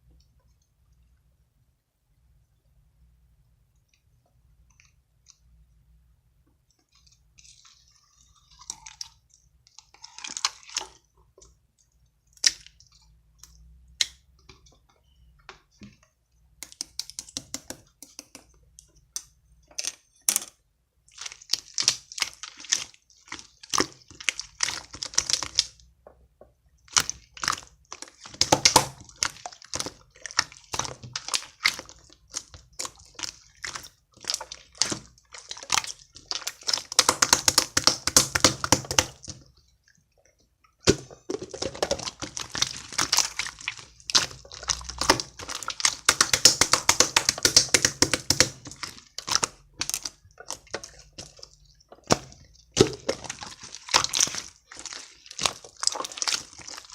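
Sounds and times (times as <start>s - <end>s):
slime crackling and popping: 21.1s - 25.8s, 26.8s - 39.5s, 40.8s - 56.9s.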